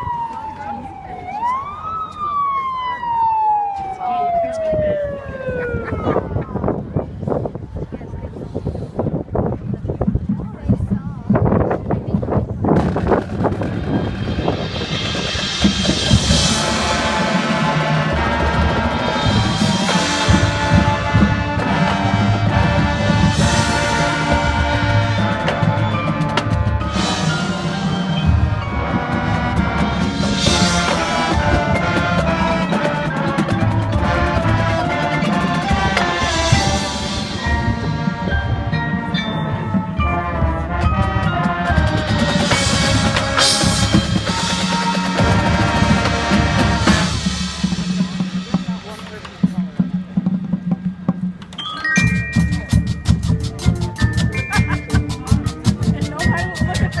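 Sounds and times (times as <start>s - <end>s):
drumline and bass drums: 4.6s - 57.0s
pitched percussion hits: 12.7s - 57.0s
brass playing sustained chords: 15.4s - 47.9s.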